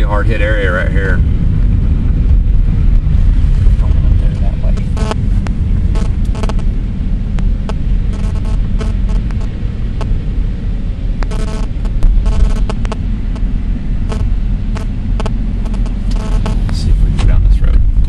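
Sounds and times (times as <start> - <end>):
car engine and road rumble: 0.0 - 18.0
short clicks and crackles: 7.4 - 10.1, 11.2 - 13.5.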